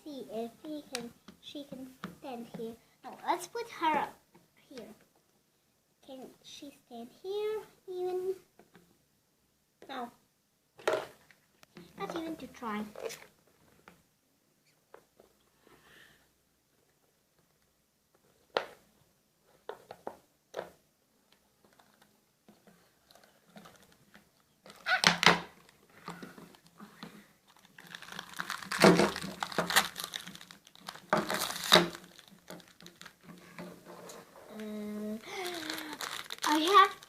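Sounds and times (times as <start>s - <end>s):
plastic packaging crinkling: 23.0s - 25.0s, 27.0s - 33.3s, 34.6s - 37.0s.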